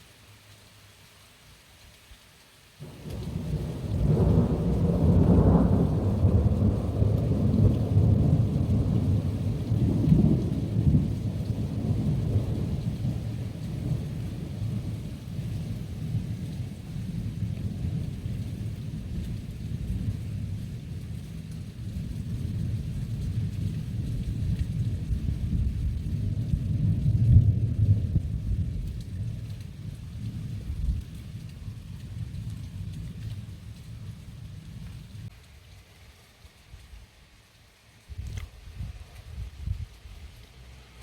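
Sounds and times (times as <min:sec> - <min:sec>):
light rain: 0:00.0 - 0:41.0
thunder rumbling: 0:02.8 - 0:35.3.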